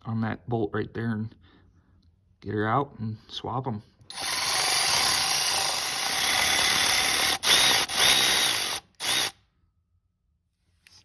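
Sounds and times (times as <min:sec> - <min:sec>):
power drill spinning: 0:04.1 - 0:09.4.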